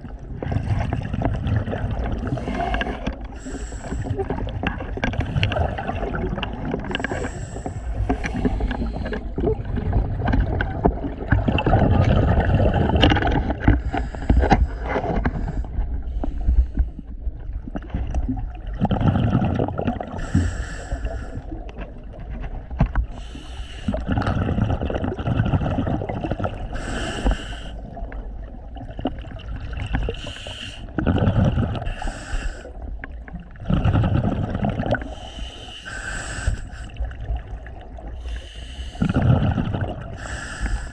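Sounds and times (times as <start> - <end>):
exhaled bubbles rumbling: 0.0 - 40.9
regulator hissing inhale: 2.3 - 4.4, 6.9 - 9.4, 13.8 - 17.0, 20.2 - 21.6, 23.1 - 24.1, 26.7 - 27.9, 30.1 - 30.9, 31.8 - 32.9, 35.0 - 37.1, 38.2 - 39.2, 40.1 - 40.9.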